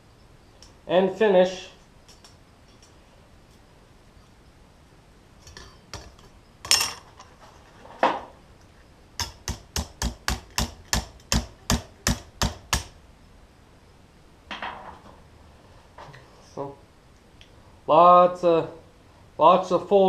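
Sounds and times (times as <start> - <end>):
hammer striking steel: 9.2 - 12.9.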